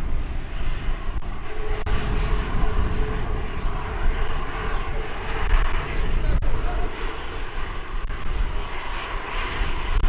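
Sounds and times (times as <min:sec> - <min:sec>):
jet engines rumbling: 0:00.0 - 0:10.0
wind buffeting microphone: 0:00.0 - 0:10.0.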